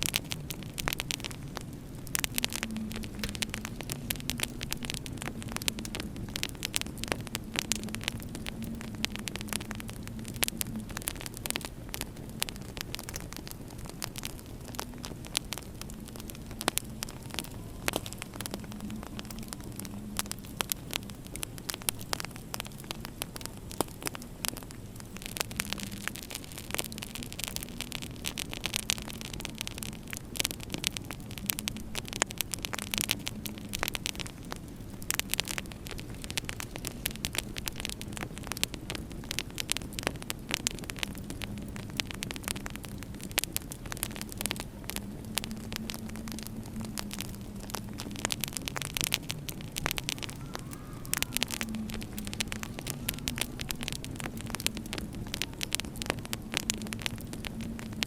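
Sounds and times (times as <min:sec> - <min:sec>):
steady low hum: 0:00.0 - 0:39.3
fire hiss: 0:00.0 - 0:58.0
wood fire crackling: 0:00.0 - 0:58.0.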